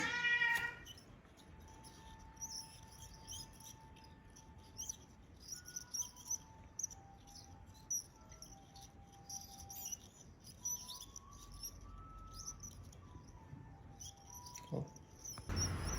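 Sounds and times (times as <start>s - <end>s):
bicycle bearing chirping squeaks: 0.0s - 15.9s.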